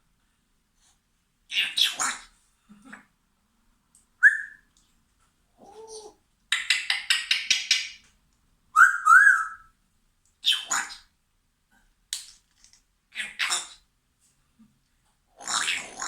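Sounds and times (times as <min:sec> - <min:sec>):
parrot whistling and rasping: 0:04.2 - 0:04.6.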